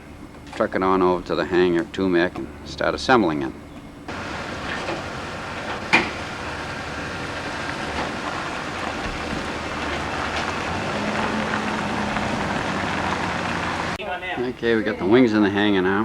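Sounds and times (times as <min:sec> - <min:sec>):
low hum: 0:04.1 - 0:14.0
vehicle road noise: 0:04.1 - 0:14.0.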